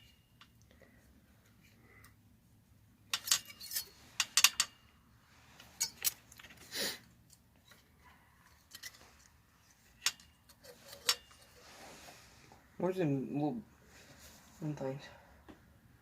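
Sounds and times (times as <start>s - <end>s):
metal tools clinking: 3.1s - 4.9s, 5.6s - 6.6s, 8.6s - 11.6s.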